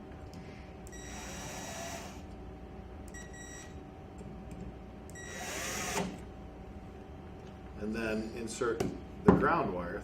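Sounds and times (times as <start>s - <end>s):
cordless screw gun whirring: 1.0s - 2.2s, 5.3s - 6.2s.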